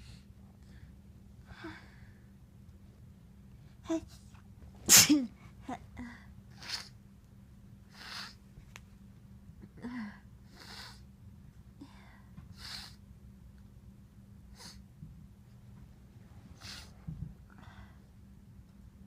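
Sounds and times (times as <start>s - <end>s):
soft noisy breaths: 0.0s - 19.0s
person sneezing: 4.9s - 5.4s.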